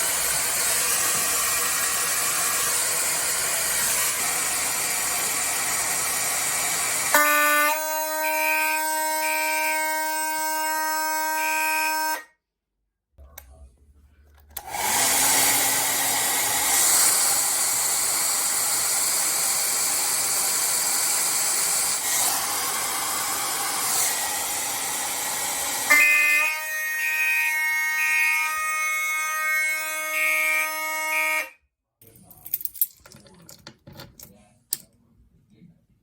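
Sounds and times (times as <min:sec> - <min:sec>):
harsh noisy alarm horn: 0:07.1 - 0:12.2
pitched alarm horn tone: 0:07.1 - 0:12.3.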